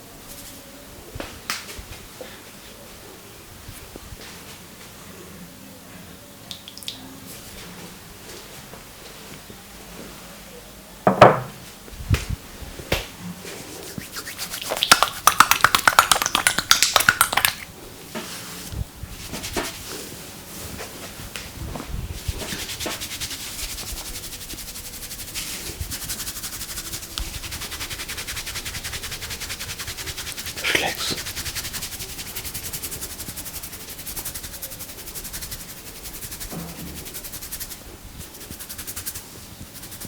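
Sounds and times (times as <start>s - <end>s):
hands rubbing hair: 13.5s - 17.7s, 19.2s - 40.0s.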